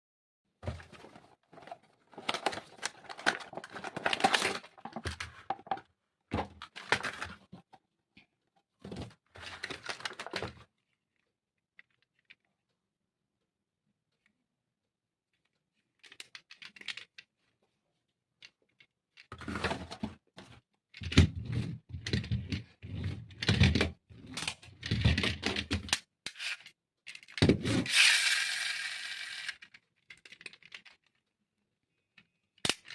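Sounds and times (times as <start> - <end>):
packaging clicks and rustling: 0.8 - 5.8, 9.4 - 10.6
packaging tearing: 2.2 - 4.6.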